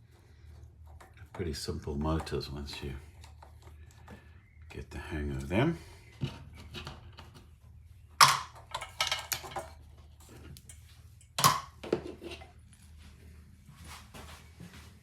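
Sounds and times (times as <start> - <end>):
metal parts clicking and clinking: 8.2 - 9.8.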